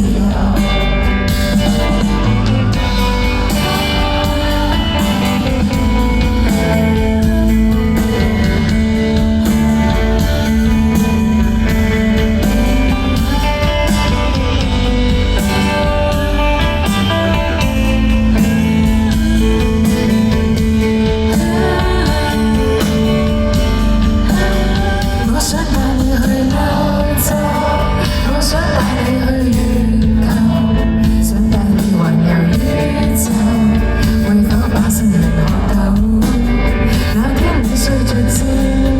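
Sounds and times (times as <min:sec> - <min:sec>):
live indie pop band: 0:00.0 - 0:38.9
person singing: 0:00.0 - 0:38.9.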